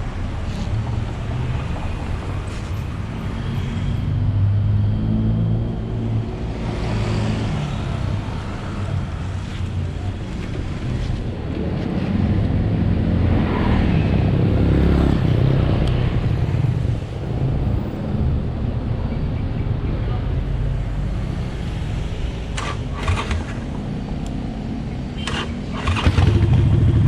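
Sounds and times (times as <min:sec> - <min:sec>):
motorcycle engine running: 0:25.3 - 0:27.0.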